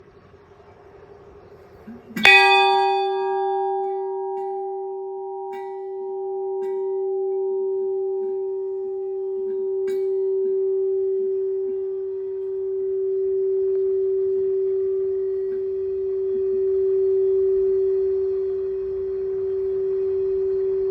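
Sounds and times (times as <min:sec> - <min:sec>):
temple bell ringing: 0:01.9 - 0:12.9.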